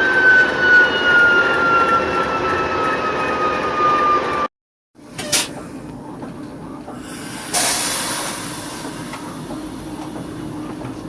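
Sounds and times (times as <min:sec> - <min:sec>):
diesel locomotive running: 0:00.0 - 0:11.0
loud hiss: 0:07.0 - 0:10.0.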